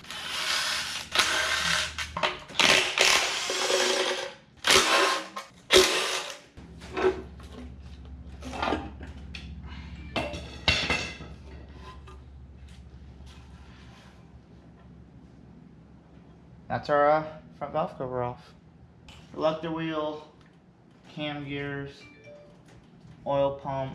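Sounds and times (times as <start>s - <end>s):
power tool removing bolts: 0.1s - 6.5s.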